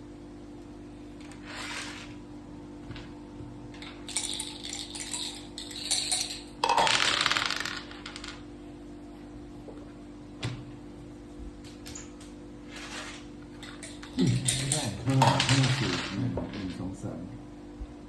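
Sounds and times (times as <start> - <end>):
dice clattering: 3.9 - 8.4, 12.7 - 16.8
game pieces clicking on board: 6.8 - 8.5.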